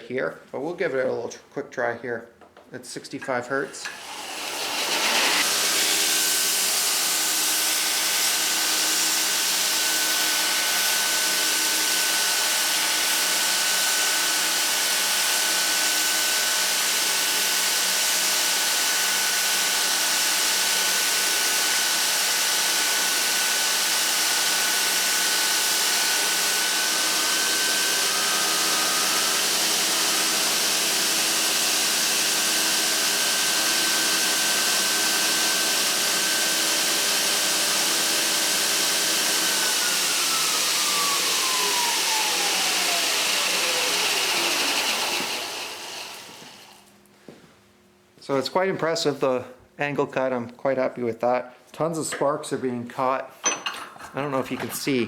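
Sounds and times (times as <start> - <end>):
belt grinder motor whine: 3.8 - 46.9.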